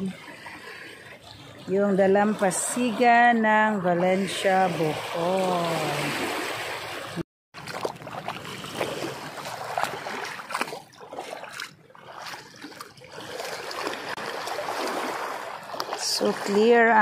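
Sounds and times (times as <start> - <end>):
small waves lapping on pebbles: 4.2 - 17.0.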